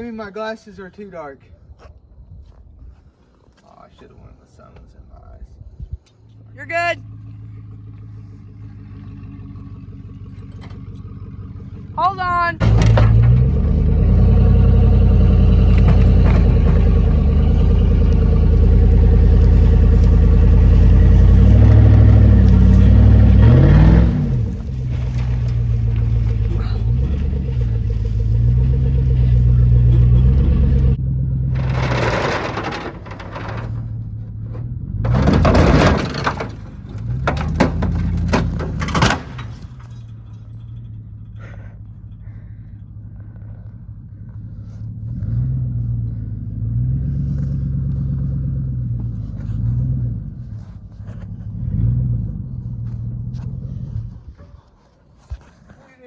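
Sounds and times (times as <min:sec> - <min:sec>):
truck engine under load: 0:06.9 - 0:55.8
crunching and cracking: 0:14.8 - 0:30.9.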